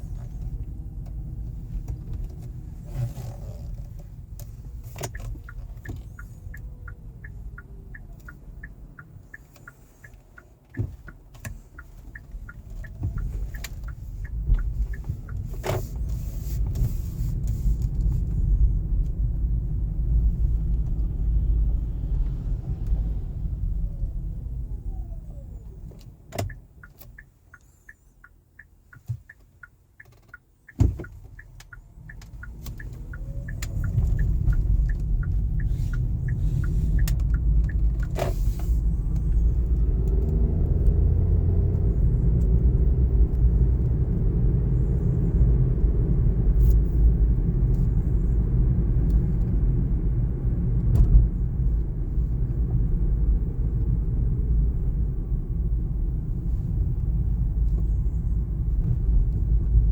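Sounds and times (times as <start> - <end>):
car road rumble: 0.0 - 59.9
light regular ticking: 3.9 - 16.8, 25.9 - 41.3.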